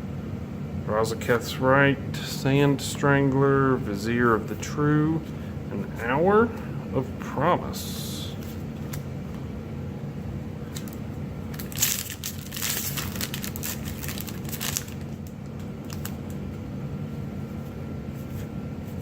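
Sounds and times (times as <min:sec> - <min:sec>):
steady low hum: 0:00.0 - 0:19.0
foil wrapper crinkling: 0:10.6 - 0:16.4.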